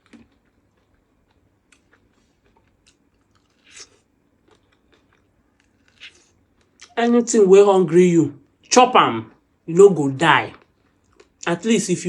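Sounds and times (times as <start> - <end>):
person chewing corn on the cob: 0.0 - 7.0, 10.5 - 11.5.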